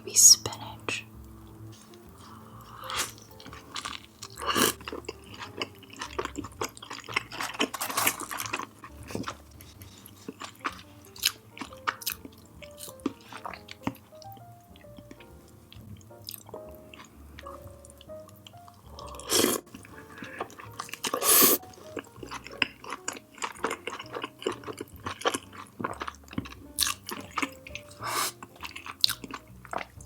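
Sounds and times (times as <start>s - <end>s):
close chewing and mouth sounds: 0.0s - 30.0s
soft background music: 0.0s - 30.0s.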